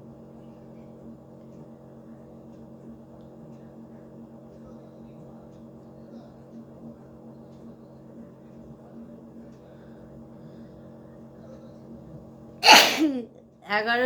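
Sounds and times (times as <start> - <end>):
woman sneezing: 12.6 - 13.3.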